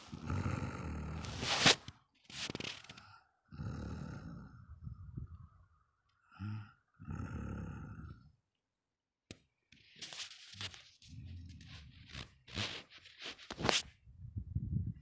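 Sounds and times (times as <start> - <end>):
person snoring loudly: 0.0 - 1.5, 3.5 - 4.6, 6.4 - 8.3.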